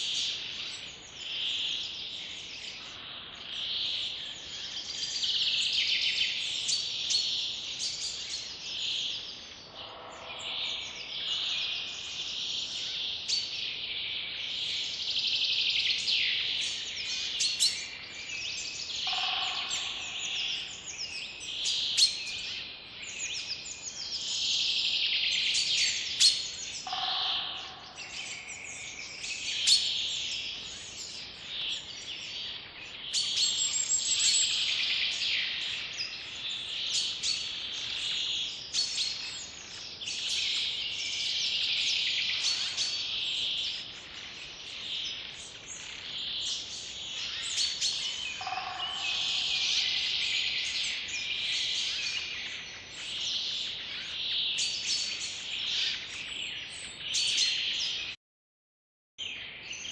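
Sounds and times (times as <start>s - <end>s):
birds singing and chirping: 0.0s - 58.2s, 59.2s - 59.9s.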